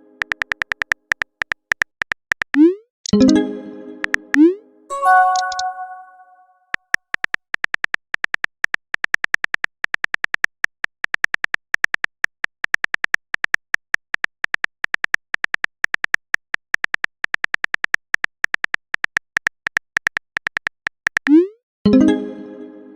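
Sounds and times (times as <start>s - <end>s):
synthetic keyboard typing clicks: 0.1s - 3.4s, 4.0s - 21.6s
ringing chime: 4.9s - 6.4s.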